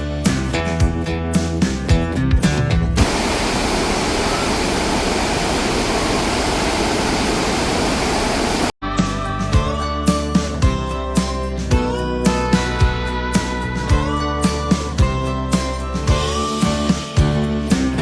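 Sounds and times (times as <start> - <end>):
waterfall rushing: 3.0 - 8.7
background music: 8.9 - 18.0.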